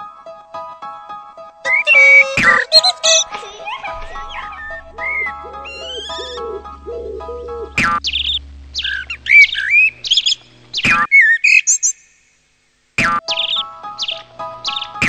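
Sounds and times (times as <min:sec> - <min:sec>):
background music: 0:00.0 - 0:08.2, 0:13.2 - 0:15.0
bird-like chirps and whistles: 0:01.7 - 0:06.4, 0:08.0 - 0:12.1, 0:13.3 - 0:15.0
steady tones: 0:01.7 - 0:06.8.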